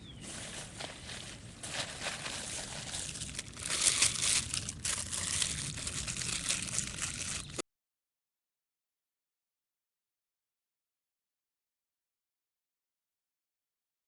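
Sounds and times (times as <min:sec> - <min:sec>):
campfire crackling: 0:01.7 - 0:07.6.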